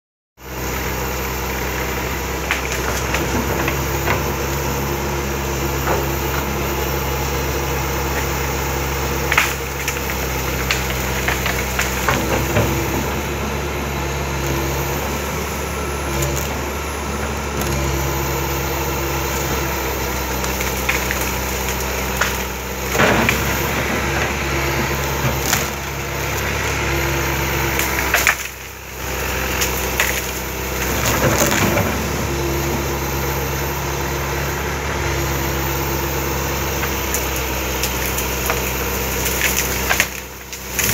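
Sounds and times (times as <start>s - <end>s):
excavator diesel engine: 0.4s - 40.9s
wood cracking and snapping: 7.9s - 13.0s, 20.0s - 26.4s, 27.7s - 32.2s, 36.6s - 40.9s.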